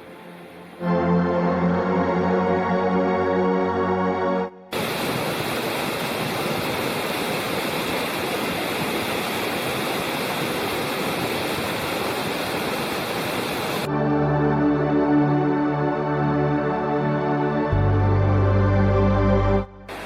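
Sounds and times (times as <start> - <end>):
stream water rushing: 4.7 - 13.9.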